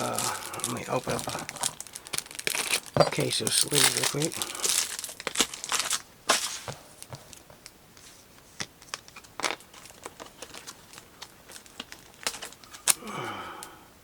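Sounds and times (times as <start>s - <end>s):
plastic packaging crinkling and tearing: 0.0s - 7.4s, 8.8s - 13.2s
handling rustles and clicks: 0.1s - 4.8s.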